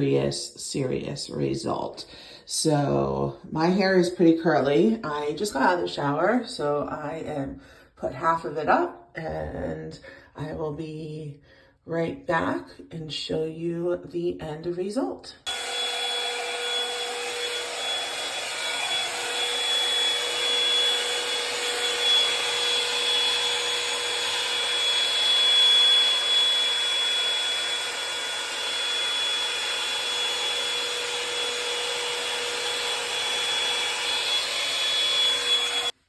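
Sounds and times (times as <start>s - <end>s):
hair dryer running: 15.4s - 36.0s.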